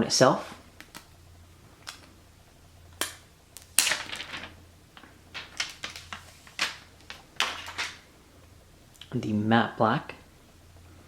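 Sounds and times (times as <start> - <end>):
packaging rustling: 3.6 - 8.0.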